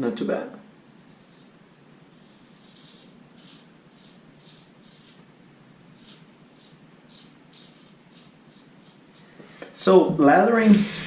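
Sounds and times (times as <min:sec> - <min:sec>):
razor scraping stubble: 0:00.9 - 0:05.3, 0:05.9 - 0:09.3.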